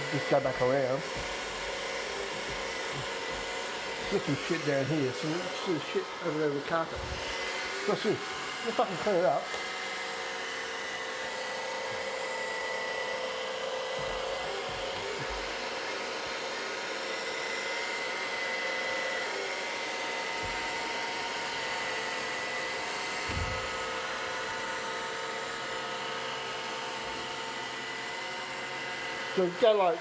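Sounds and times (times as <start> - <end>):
robot vacuum suction hiss: 23.0 - 24.6
low thumps: 23.2 - 24.0.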